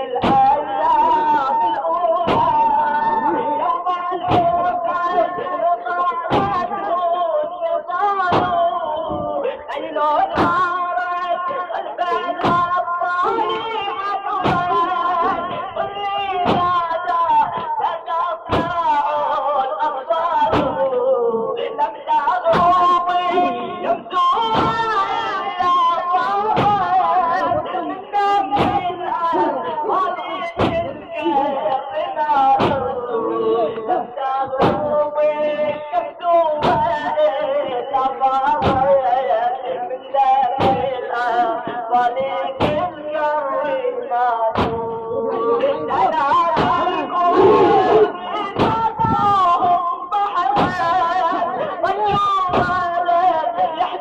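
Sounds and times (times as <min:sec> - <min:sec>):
voice chanting: 0:00.0 - 0:54.0
deep thump: 0:00.2 - 0:00.5, 0:02.2 - 0:02.7, 0:04.3 - 0:05.4, 0:06.3 - 0:06.7, 0:08.3 - 0:09.5, 0:10.3 - 0:10.8, 0:12.4 - 0:12.8, 0:14.4 - 0:17.7, 0:18.5 - 0:18.9, 0:20.4 - 0:20.9, 0:22.5 - 0:22.9, 0:24.5 - 0:24.9, 0:26.5 - 0:27.7, 0:28.6 - 0:29.0, 0:30.6 - 0:31.1, 0:32.6 - 0:33.0, 0:33.6 - 0:35.0, 0:36.6 - 0:37.8, 0:38.6 - 0:39.0, 0:40.6 - 0:41.9, 0:42.6 - 0:43.0, 0:44.6 - 0:45.0, 0:45.6 - 0:49.8, 0:50.6 - 0:51.1, 0:51.7 - 0:53.0.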